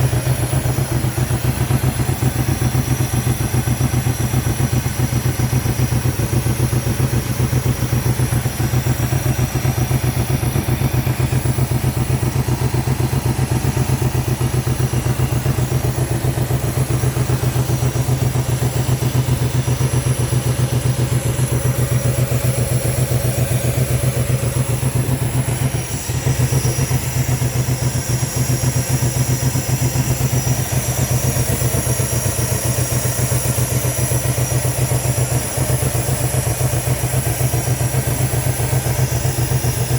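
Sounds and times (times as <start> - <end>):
engine idling with misfire: 0.0 - 39.9.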